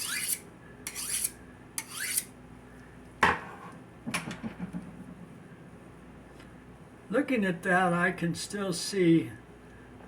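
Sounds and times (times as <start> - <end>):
knife scraping on honing steel: 0.0 - 2.3.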